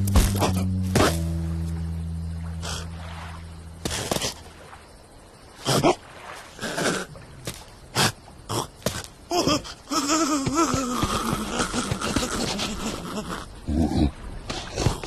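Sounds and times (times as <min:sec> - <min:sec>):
low droning tone: 0:00.0 - 0:03.8.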